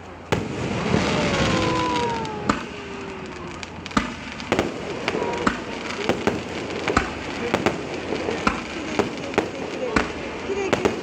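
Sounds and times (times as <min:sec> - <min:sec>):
firework crackling hiss: 0:00.0 - 0:11.0
sharp firework bangs: 0:00.3 - 0:11.0
falling firework whistles: 0:00.4 - 0:07.8.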